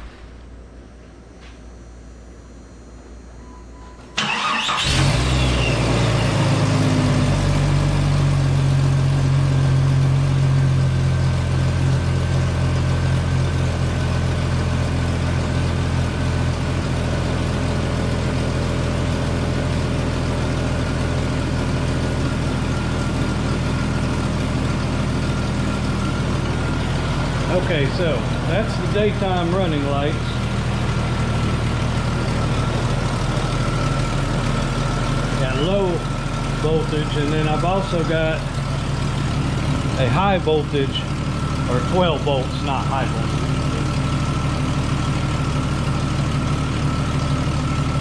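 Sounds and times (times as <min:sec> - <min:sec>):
starter cranking engine: 0:04.2 - 0:05.4
car engine idling: 0:04.2 - 0:48.0.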